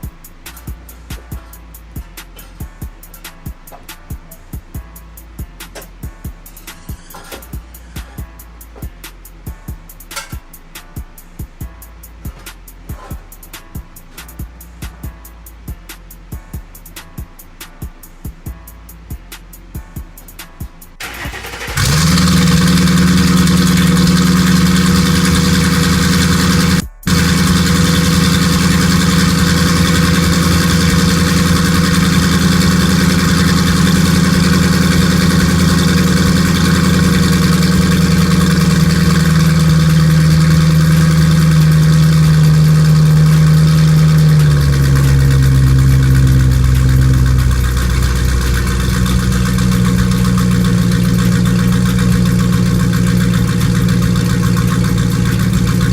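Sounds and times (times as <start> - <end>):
loud car exhaust idling: 21.0 - 55.9.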